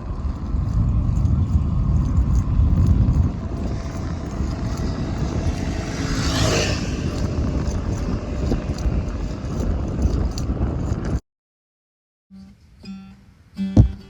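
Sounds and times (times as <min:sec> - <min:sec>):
rumbling road noise: 0:00.0 - 0:11.2
vehicle passing: 0:00.0 - 0:11.2.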